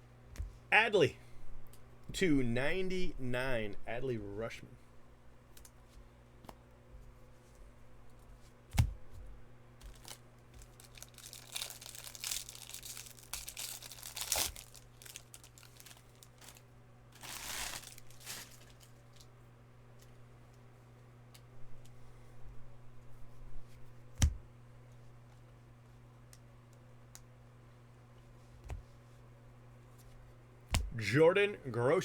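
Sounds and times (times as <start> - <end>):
card pack wrappers tearing and crinkling: 9.8 - 16.6, 17.2 - 19.3.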